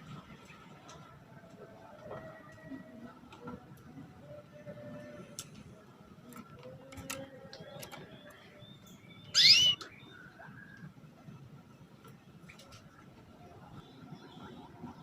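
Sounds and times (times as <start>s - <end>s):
canary call: 9.3s - 9.9s.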